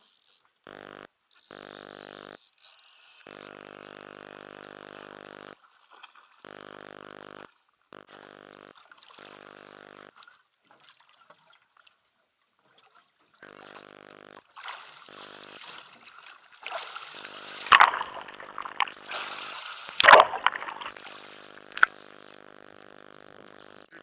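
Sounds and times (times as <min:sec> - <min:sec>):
water splashing: 0:14.6 - 0:21.9
steady low hum: 0:17.0 - 0:23.6.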